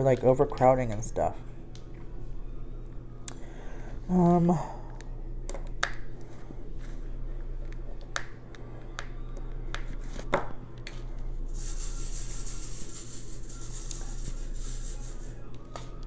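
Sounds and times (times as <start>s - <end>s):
small beads rattling on plastic: 11.5s - 15.4s.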